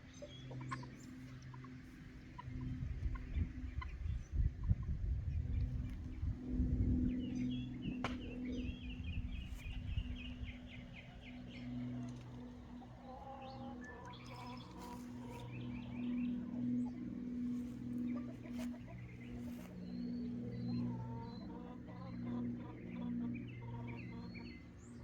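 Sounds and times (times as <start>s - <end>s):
steady low hum: 0.0s - 25.0s
birds chirping: 7.0s - 25.0s.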